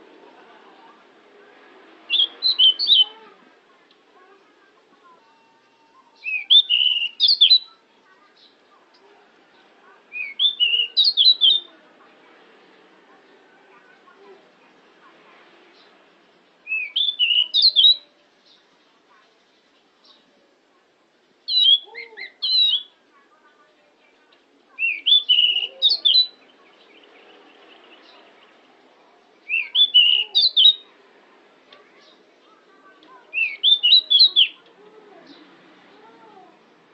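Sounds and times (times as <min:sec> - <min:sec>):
bird singing whistled notes: 0:02.1 - 0:03.2, 0:05.4 - 0:07.8, 0:10.1 - 0:11.7, 0:16.6 - 0:18.6, 0:21.5 - 0:23.0, 0:24.8 - 0:28.2, 0:29.4 - 0:30.9, 0:33.3 - 0:34.6.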